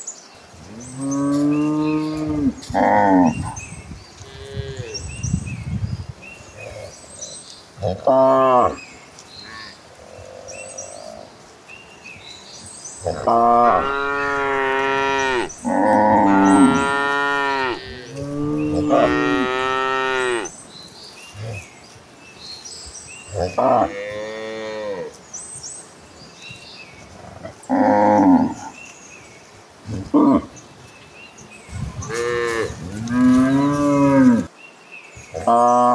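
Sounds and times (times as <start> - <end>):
cattle mooing: 13.0 - 20.5.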